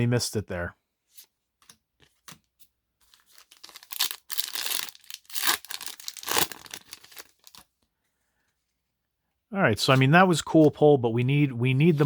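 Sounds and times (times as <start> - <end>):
foil wrapper tearing and crinkling: 3.1 - 7.6.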